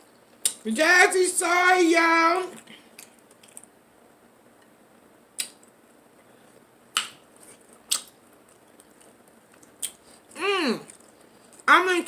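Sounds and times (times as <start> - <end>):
wet eating smacks: 6.9 - 10.0.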